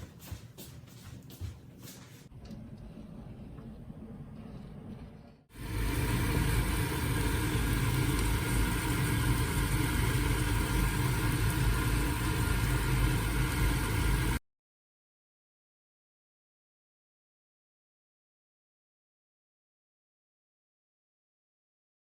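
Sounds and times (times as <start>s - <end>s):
mechanical hum with low drone: 1.0s - 14.4s.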